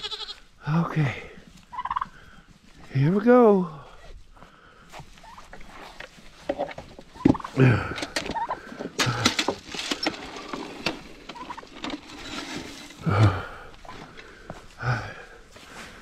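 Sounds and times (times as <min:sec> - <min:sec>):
farm animals calling: 0:00.0 - 0:00.5, 0:01.6 - 0:02.5, 0:05.1 - 0:05.6, 0:07.1 - 0:08.9, 0:11.3 - 0:11.6
clicks and scuffling: 0:05.0 - 0:14.7.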